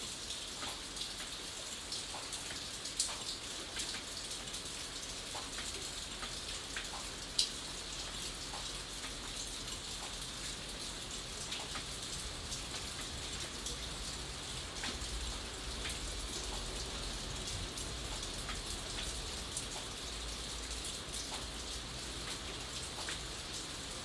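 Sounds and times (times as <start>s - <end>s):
raindrops ticking on a surface: 0.0s - 24.0s
rain hiss: 0.1s - 24.0s.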